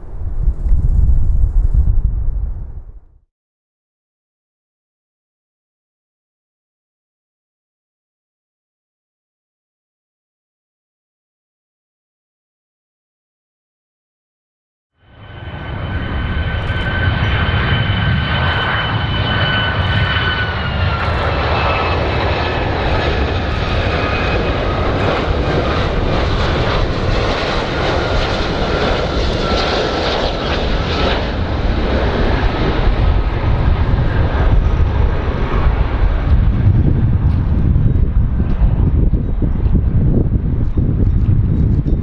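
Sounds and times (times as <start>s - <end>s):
airplane engines rumbling: 0.0s - 3.2s, 15.0s - 42.0s
high engine whine: 15.0s - 42.0s.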